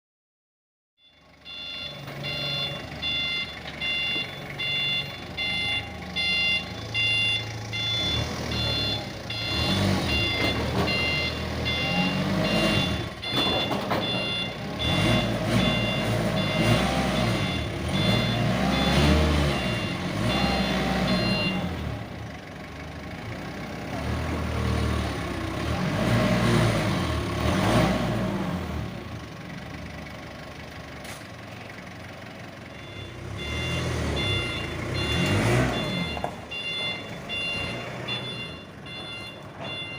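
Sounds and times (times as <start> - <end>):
reversing alarm beeping: 1.0 - 22.0, 32.6 - 39.9.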